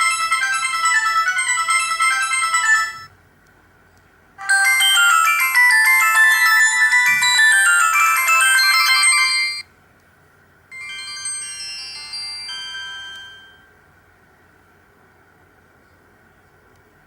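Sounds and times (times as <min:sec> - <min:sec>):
busy polyphonic ringtone: 0:00.0 - 0:03.1, 0:04.4 - 0:09.7, 0:10.7 - 0:13.8
quiet sparse ringtone: 0:12.5 - 0:13.8.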